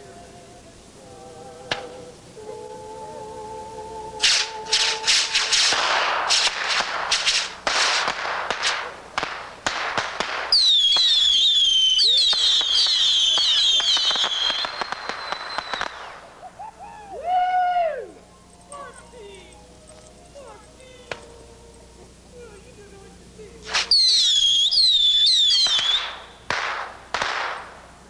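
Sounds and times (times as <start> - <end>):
fireworks bangs and crackling: 1.7 - 2.1, 4.2 - 16.8, 20.5 - 21.5, 23.5 - 28.0
fireworks whistles falling in pitch: 4.2 - 18.3, 23.6 - 28.0.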